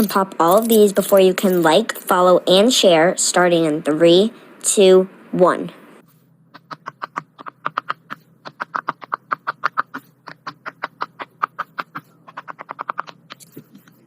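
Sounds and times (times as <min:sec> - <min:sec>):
fidget toy bubbles popping: 0:06.6 - 0:13.5.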